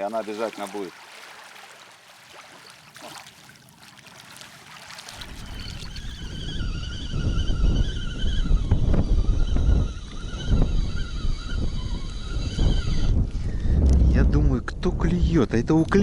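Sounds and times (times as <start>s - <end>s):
wind buffeting microphone: 4.4s - 16.0s
thin wavering whistle: 5.4s - 13.1s.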